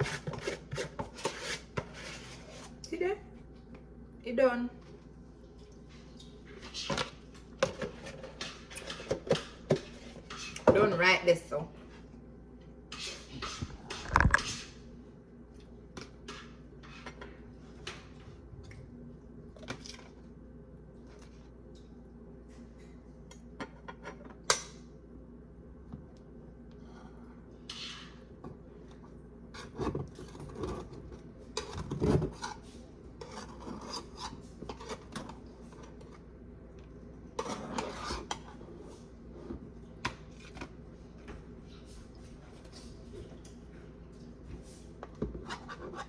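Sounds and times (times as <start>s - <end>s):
utensils scraping and clinking on dish: 29.6s - 36.2s, 37.3s - 38.8s.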